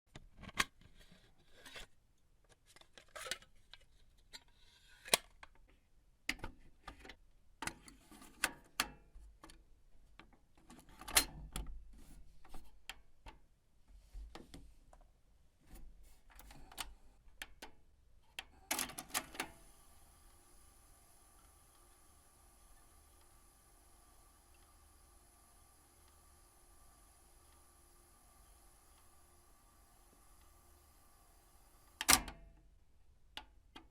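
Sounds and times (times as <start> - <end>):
plastic cassette clicks and clacks: 2.5 - 5.6, 16.4 - 19.6, 32.0 - 32.4
cassette motor hum: 18.5 - 32.4.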